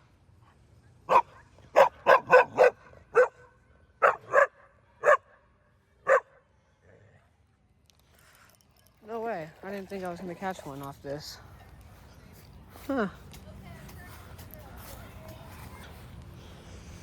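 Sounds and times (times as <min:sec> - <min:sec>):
dog barking: 0:01.1 - 0:03.4, 0:04.0 - 0:05.3, 0:06.0 - 0:06.3.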